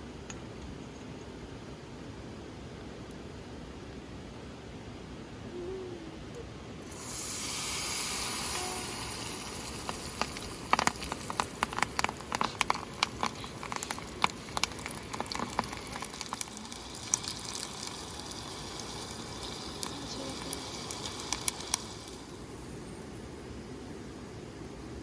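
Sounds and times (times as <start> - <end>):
oil crackling and popping: 6.8 - 23.3
food sizzling in hot oil: 6.8 - 23.4.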